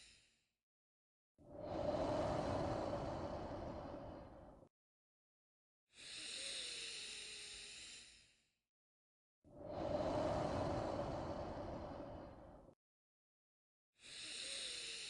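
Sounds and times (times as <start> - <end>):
person breathing slowly: 1.4 - 4.7, 5.9 - 8.1, 9.5 - 12.8, 14.0 - 15.0.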